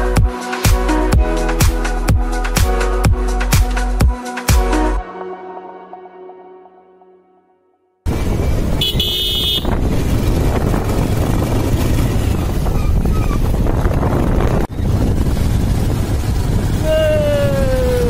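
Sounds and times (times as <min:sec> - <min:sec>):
vehicle road and wind noise: 0:08.0 - 0:18.0.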